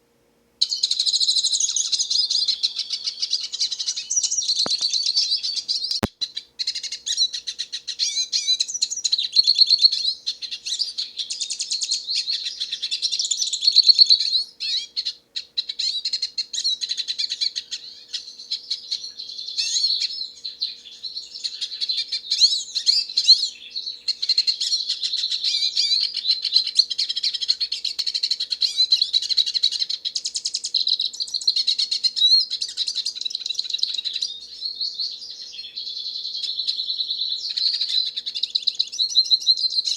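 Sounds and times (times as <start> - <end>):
bird singing twittering warble: 0.6 - 39.9.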